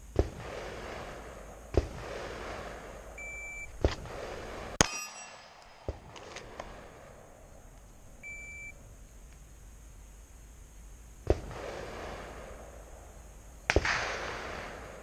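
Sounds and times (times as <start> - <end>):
pistol shots: 0.1 - 7.4, 13.7 - 15.0
shot timer beep: 3.2 - 3.7, 8.2 - 8.8.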